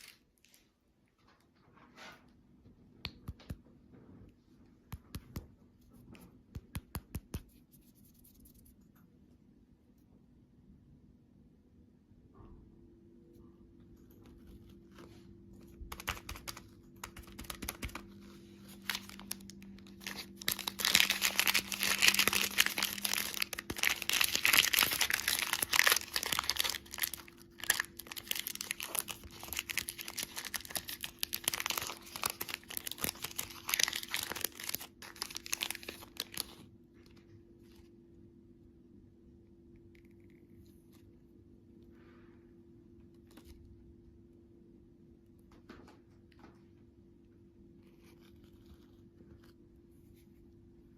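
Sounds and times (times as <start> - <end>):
candy wrappers crinkling: 15.8 - 36.7.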